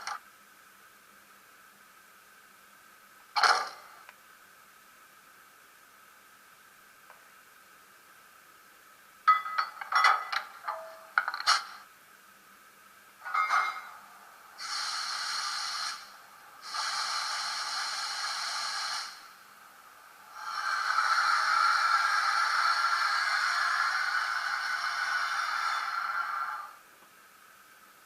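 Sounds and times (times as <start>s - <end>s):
model locomotive hissing: 14.5s - 26.8s.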